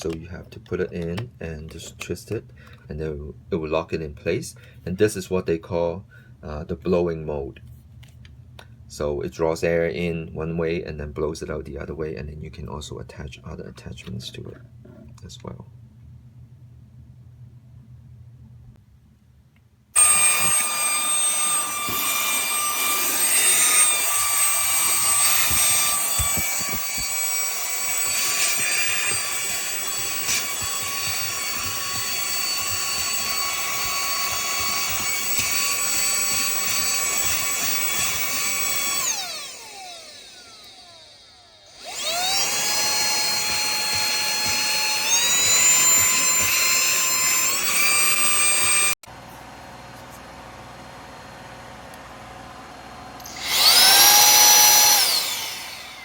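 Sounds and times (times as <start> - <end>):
handheld vacuum motor whine: 20.0 - 49.0, 53.2 - 56.0.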